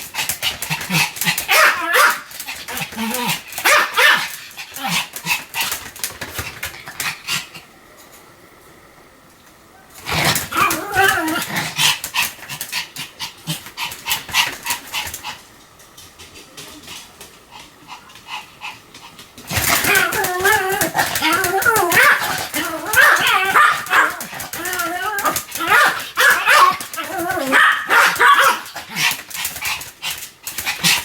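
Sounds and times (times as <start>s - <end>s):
small dog yapping: 0.9s - 5.4s, 9.8s - 12.0s, 19.5s - 29.1s
dog whining: 9.8s - 11.6s, 19.5s - 28.7s.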